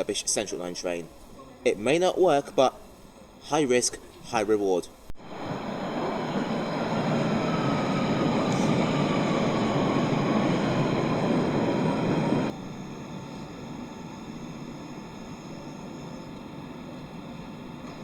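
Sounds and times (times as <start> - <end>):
steady hum: 5.1 - 18.0
train wheels rushing: 5.2 - 18.0.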